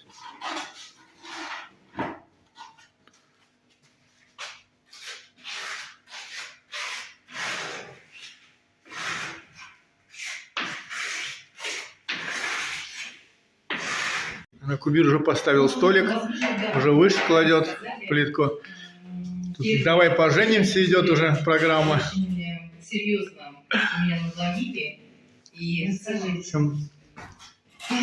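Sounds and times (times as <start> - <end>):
rough scraping strokes: 4.4 - 14.5.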